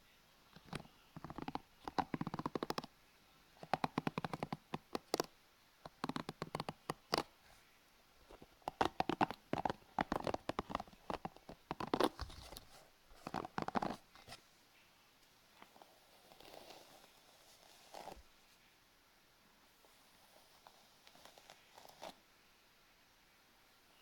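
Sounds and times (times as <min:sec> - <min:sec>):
rapid scratchy clicking: 0:08.4 - 0:12.3.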